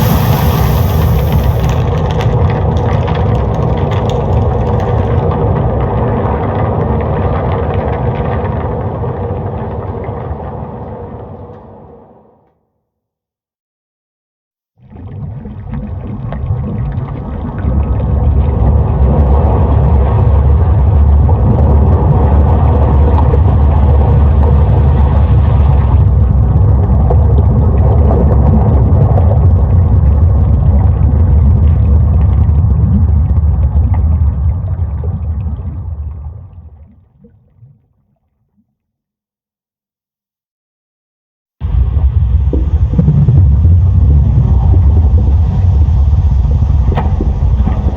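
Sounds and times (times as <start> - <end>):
deep volcanic rumble: 0.0 - 11.4, 15.9 - 36.5, 41.6 - 47.9.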